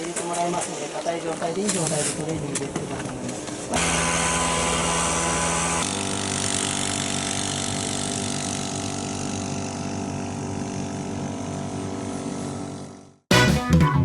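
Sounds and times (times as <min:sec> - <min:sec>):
engine running: 0:03.7 - 0:13.2.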